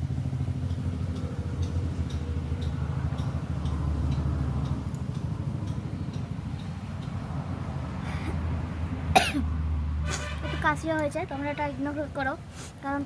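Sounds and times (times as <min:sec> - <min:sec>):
traffic engine rumble: 0:00.0 - 0:13.0
faint ticks: 0:00.6 - 0:07.2.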